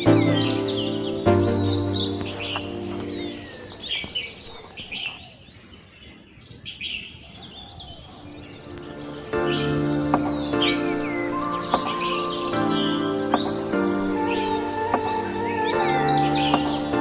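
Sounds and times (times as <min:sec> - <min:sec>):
background music: 0:00.0 - 0:03.8, 0:08.4 - 0:17.0
small birds chirping: 0:00.0 - 0:17.0.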